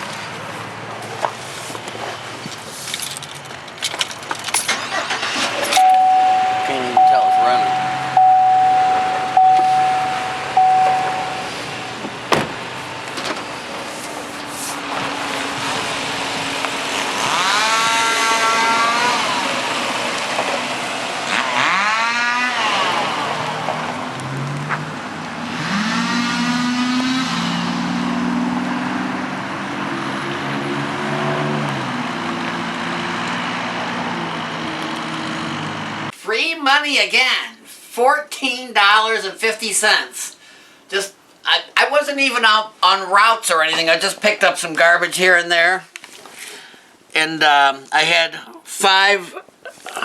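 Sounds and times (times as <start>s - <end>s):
road noise: 0.0s - 36.2s
truck engine accelerating: 3.1s - 36.1s
vehicle warning chime: 4.7s - 12.4s.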